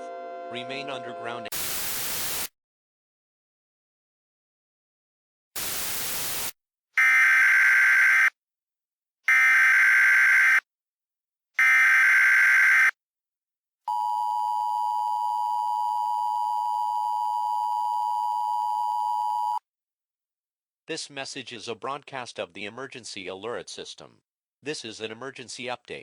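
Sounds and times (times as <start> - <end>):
static hiss: 1.5 - 2.5, 5.6 - 6.6.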